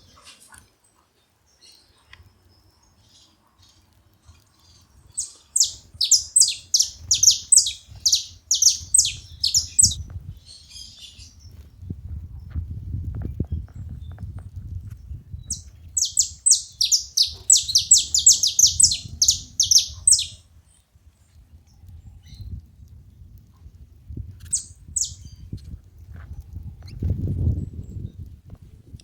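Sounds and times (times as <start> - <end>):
finches calling: 5.2 - 10.0, 15.5 - 20.4.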